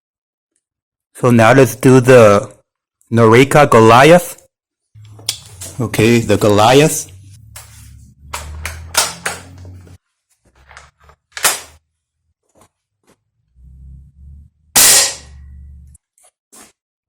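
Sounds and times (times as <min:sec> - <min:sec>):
air rifle shot: 0:14.8 - 0:15.4.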